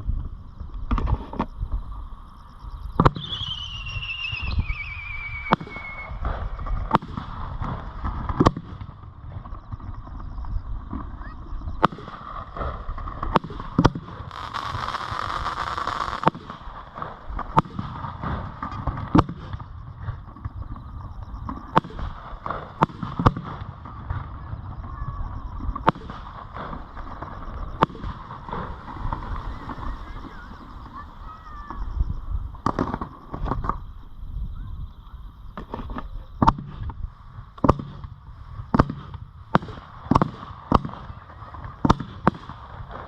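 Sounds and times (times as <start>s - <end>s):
hissing crackle: 0.0s - 34.2s
fireworks bangs: 2.9s - 10.2s, 10.8s - 34.0s, 35.5s - 43.0s
low rumble: 16.5s - 39.5s.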